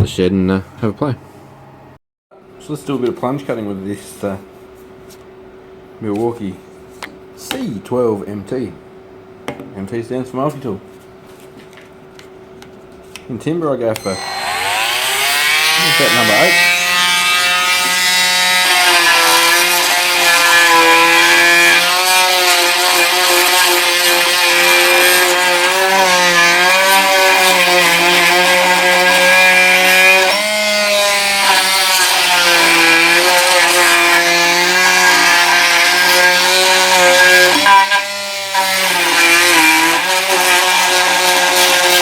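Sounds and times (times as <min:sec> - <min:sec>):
oscillating multi tool cutting wood: 0:14.0 - 0:42.0.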